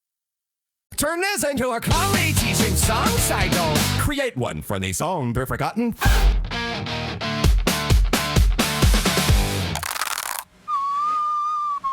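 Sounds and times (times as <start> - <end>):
band drum and guitar beat: 1.9 - 4.0, 7.4 - 9.7.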